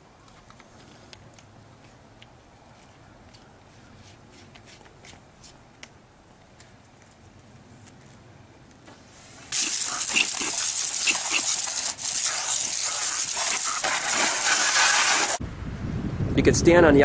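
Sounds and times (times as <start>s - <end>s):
water spraying hard: 9.5s - 15.4s.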